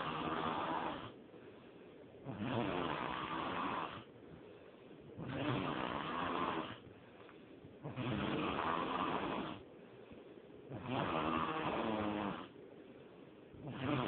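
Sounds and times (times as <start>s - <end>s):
person snoring: 0.0s - 1.2s, 2.2s - 4.1s, 5.2s - 6.8s, 7.8s - 9.6s, 10.7s - 12.6s, 13.6s - 14.0s.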